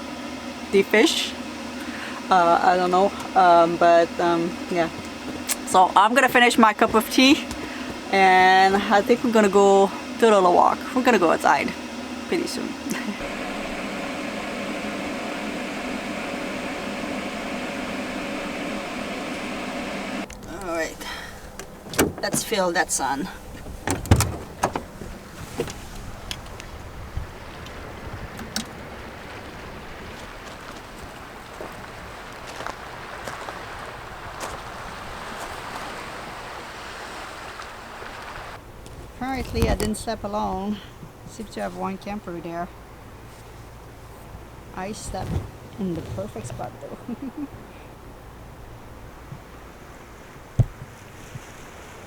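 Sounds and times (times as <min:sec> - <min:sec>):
heater fan whoosh: 0:00.0 - 0:20.3
low even hum: 0:00.0 - 0:52.0
wind: 0:00.0 - 0:52.0
ocean surf: 0:26.6 - 0:38.6, 0:49.4 - 0:52.0.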